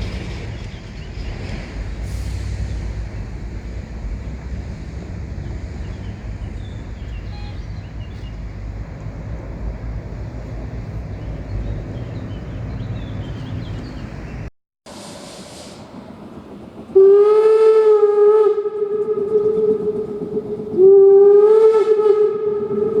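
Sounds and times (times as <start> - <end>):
short hiss: 14.9 - 16.1
steam locomotive whistle: 17.0 - 23.0.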